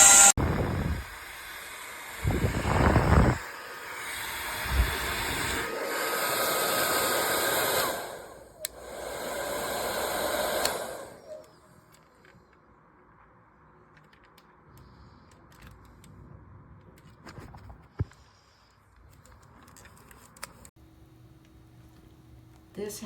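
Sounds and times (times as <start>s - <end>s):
hair dryer blowing: 0.0s - 11.5s.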